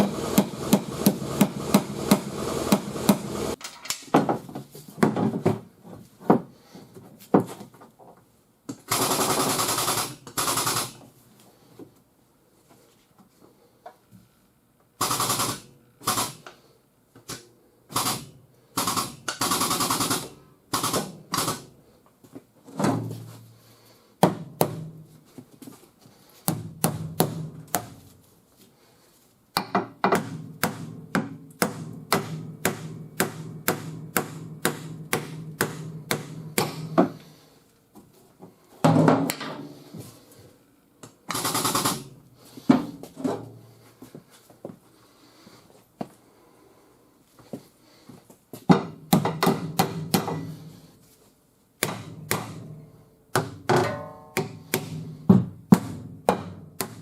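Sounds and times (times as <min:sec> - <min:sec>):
hammer striking steel panel: 0:00.0 - 0:03.4, 0:30.1 - 0:37.1, 0:51.8 - 0:57.0.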